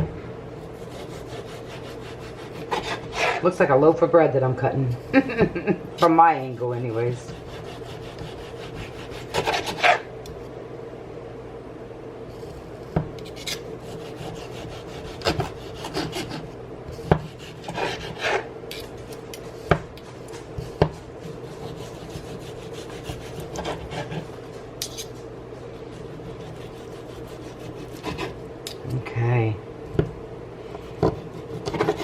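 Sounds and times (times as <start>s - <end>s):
knife sawing through meat: 0.8s - 3.5s, 7.3s - 10.1s, 13.3s - 16.5s, 17.3s - 18.5s, 21.3s - 24.4s, 25.8s - 28.4s, 31.0s - 32.0s.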